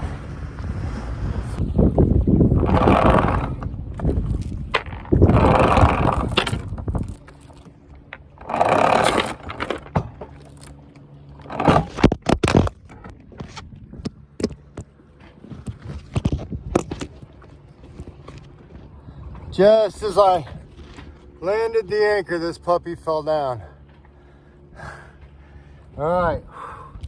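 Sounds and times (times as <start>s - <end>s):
wind on microphone: 0.0s - 10.4s, 11.5s - 21.2s
faint engine hum: 0.0s - 27.0s
anchor chain clanking: 2.6s - 13.6s.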